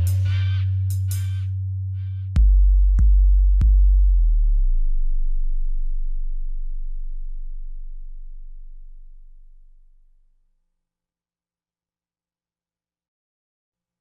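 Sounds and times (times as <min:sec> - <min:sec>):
sub-bass hits: 0:00.0 - 0:09.8
held sub-bass note: 0:00.0 - 0:10.2.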